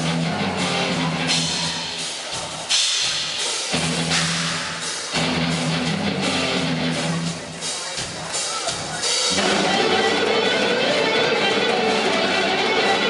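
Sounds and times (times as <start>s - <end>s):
distorted electric guitar chords: 0.0s - 2.0s, 3.8s - 7.5s, 9.3s - 13.0s
pounding drum kit: 0.0s - 13.0s.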